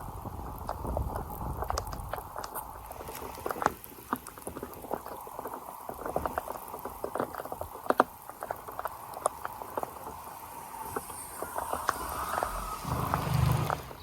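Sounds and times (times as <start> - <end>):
rain drops pattering: 0.0 - 14.0.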